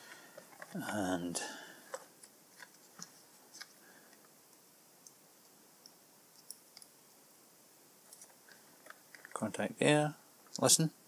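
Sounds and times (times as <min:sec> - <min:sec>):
faint clicks of small parts: 0:01.9 - 0:06.9, 0:08.0 - 0:09.4.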